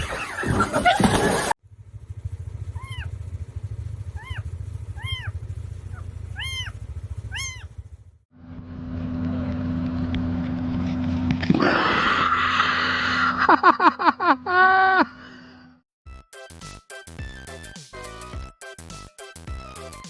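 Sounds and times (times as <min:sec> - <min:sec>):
vehicle engine rumble: 0:00.0 - 0:11.6
dog whining: 0:02.8 - 0:03.1, 0:04.2 - 0:04.4, 0:05.0 - 0:07.7.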